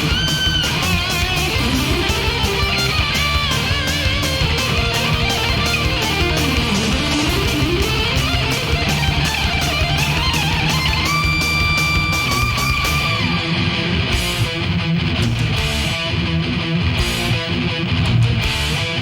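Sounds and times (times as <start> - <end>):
pounding drums: 0.0 - 13.5
bass guitar: 0.0 - 19.0
distorted electric lead guitar: 0.0 - 19.0.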